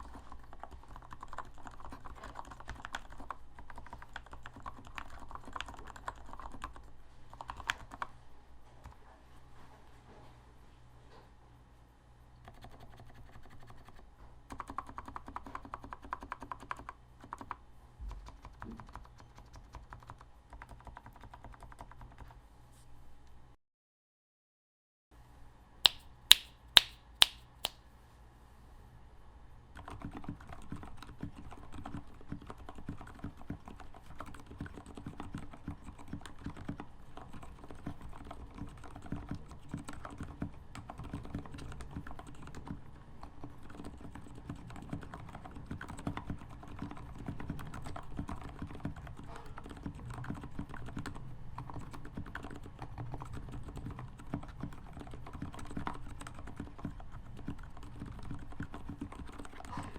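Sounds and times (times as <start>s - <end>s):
loud sharp clicks: 25.9s - 27.7s.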